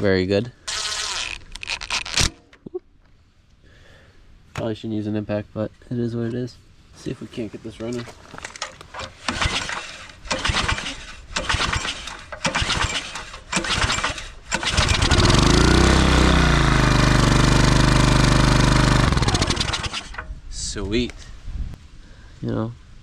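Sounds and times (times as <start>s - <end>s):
recoil starter pulls: 7.9s - 20.4s
small engine running: 9.2s - 20.2s.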